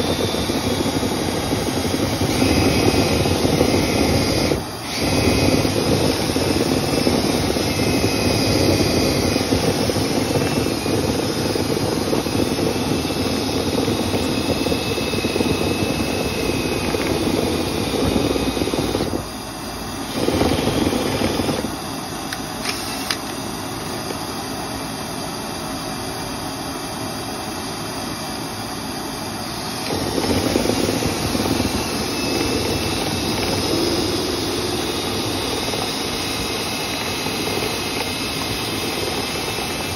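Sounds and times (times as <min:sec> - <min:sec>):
cleaning equipment motor rushing: 0:00.0 - 0:19.3, 0:20.0 - 0:21.8, 0:29.6 - 0:39.9.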